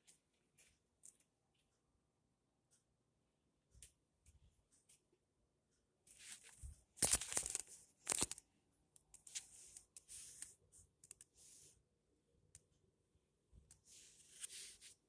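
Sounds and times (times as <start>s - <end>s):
rustling and scratching: 6.1s - 8.4s, 9.2s - 11.8s, 13.9s - 15.0s.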